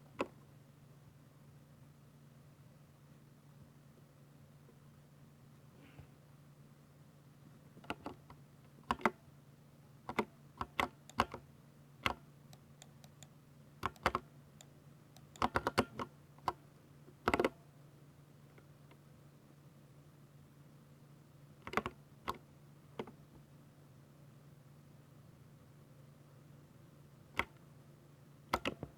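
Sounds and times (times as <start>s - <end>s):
mechanical keyboard keystrokes: 10.1s - 11.4s, 12.8s - 14.2s, 15.2s - 16.1s, 28.5s - 28.9s.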